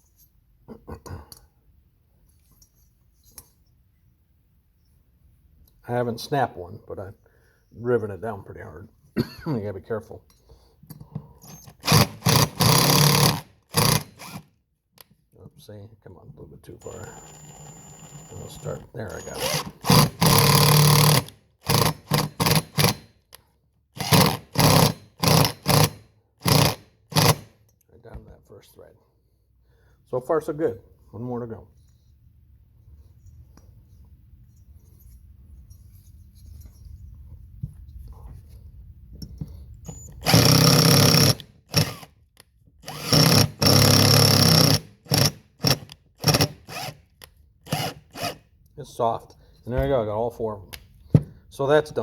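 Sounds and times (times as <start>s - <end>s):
power drill short bursts: 11.5s - 14.5s, 16.8s - 23.1s, 24.0s - 27.5s, 39.9s - 42.1s, 42.8s - 47.0s, 47.7s - 48.4s.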